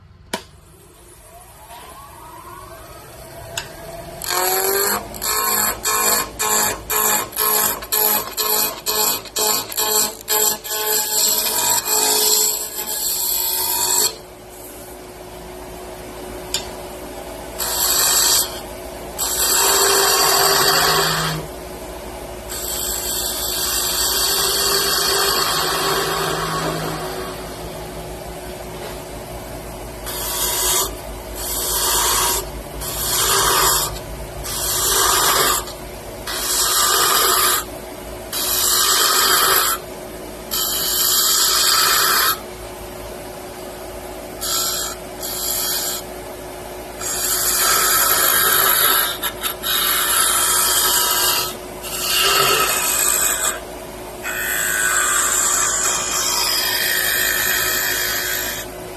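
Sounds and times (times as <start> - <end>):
faint steady hum: 0.0 - 58.9
abrasive tool rasping wood: 3.6 - 14.2, 17.6 - 18.6, 19.2 - 21.5, 22.5 - 27.6, 30.0 - 37.7, 38.3 - 39.8, 40.5 - 42.4, 44.4 - 46.1, 47.0 - 53.6, 54.2 - 58.7.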